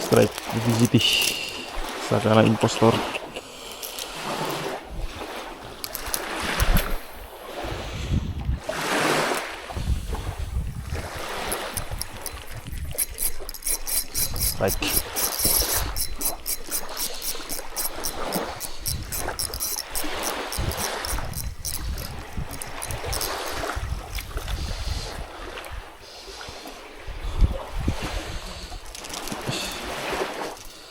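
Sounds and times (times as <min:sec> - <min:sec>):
waves washing on shore: 0:00.0 - 0:12.4
small waves washing on shore: 0:00.0 - 0:30.9
wind buffeting microphone: 0:04.1 - 0:17.9, 0:18.6 - 0:26.0, 0:27.0 - 0:28.9.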